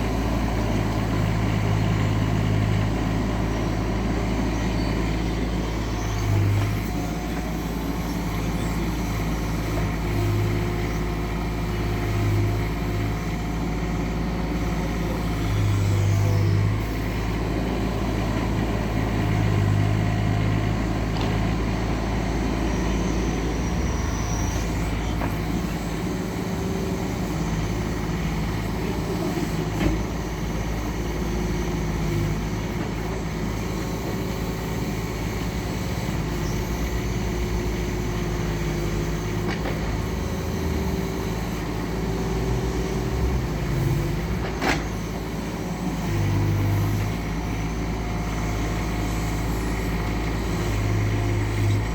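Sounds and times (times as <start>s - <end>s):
excavator diesel engine running: 0.0s - 51.9s
hydraulic whine: 20.8s - 51.9s.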